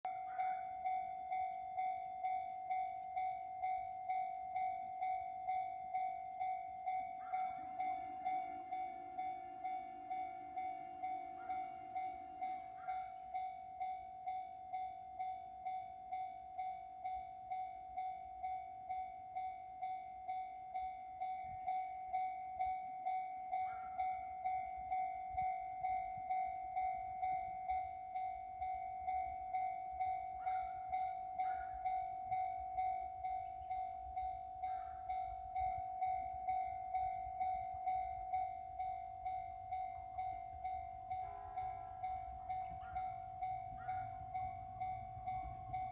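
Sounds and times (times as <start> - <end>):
train rumble: 0.0 - 45.9
level crossing bell dinging: 0.1 - 45.9.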